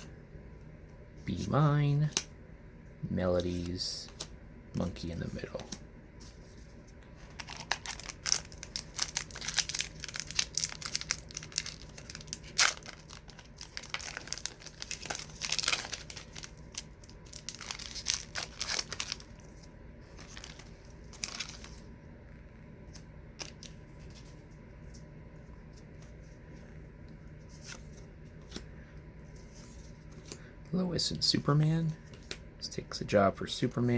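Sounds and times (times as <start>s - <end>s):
wrapper being torn and crinkled: 7.2s - 21.8s.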